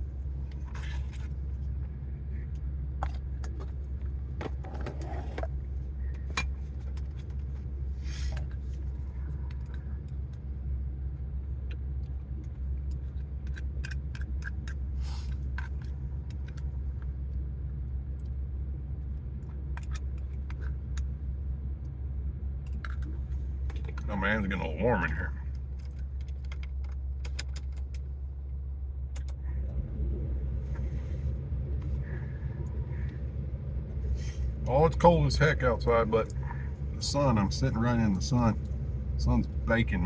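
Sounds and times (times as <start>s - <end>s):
truck idling: 0.0s - 40.0s
small clicks and rustles: 25.4s - 28.2s.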